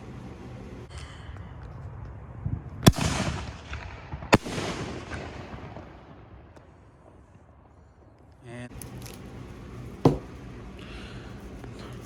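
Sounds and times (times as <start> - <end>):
firework bangs: 2.8 - 6.6.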